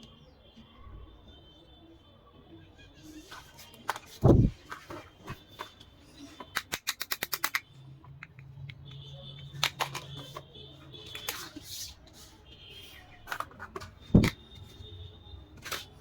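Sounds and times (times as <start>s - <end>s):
plastic toy pieces clicking: 6.5s - 8.5s, 9.6s - 10.4s.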